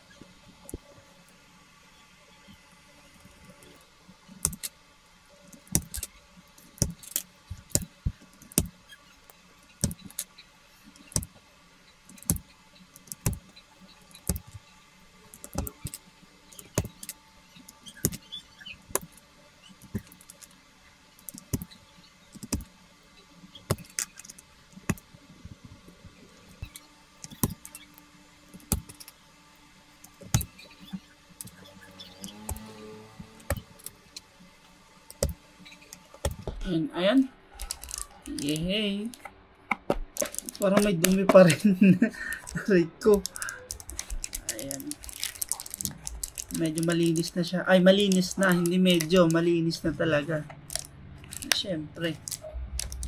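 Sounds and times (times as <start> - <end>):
plastic keyboard parts clicking: 5.6 - 6.1, 15.4 - 16.0, 22.4 - 22.7, 26.6 - 27.8, 28.6 - 29.1, 33.4 - 33.9, 37.6 - 41.7, 42.3 - 49.8, 50.7 - 53.0.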